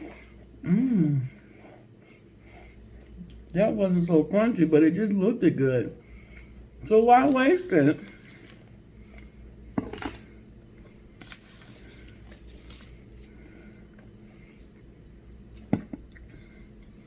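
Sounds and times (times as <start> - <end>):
faint soft chewing: 0.0 - 3.6, 6.0 - 6.8, 8.0 - 17.0.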